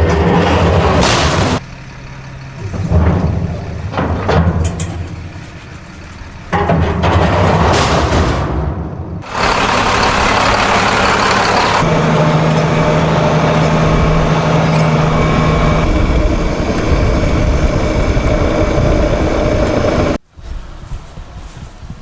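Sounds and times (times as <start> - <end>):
heavy diesel engine running: 0.0 - 20.2
low steady drone: 9.2 - 20.2.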